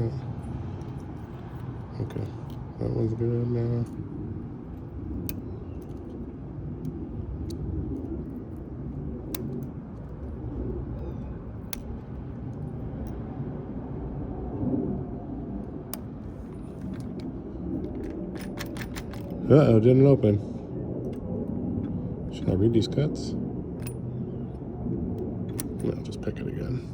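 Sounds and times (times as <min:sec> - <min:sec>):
low outdoor rumble: 0:00.0 - 0:26.9
lock pick metallic clicks: 0:05.2 - 0:10.3, 0:15.9 - 0:19.4, 0:25.5 - 0:26.0.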